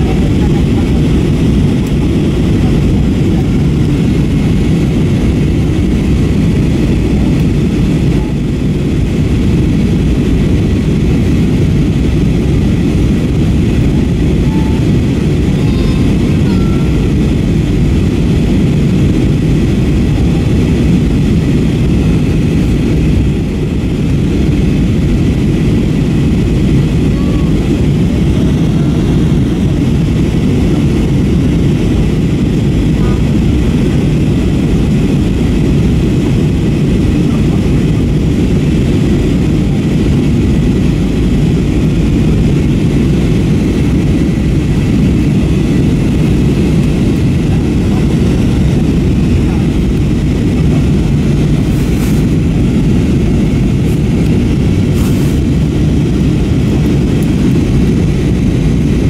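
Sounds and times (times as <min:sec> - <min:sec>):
airliner cabin drone: 0:00.0 - 0:59.0
faint murmur of voices: 0:27.0 - 0:29.9, 0:32.8 - 0:34.4.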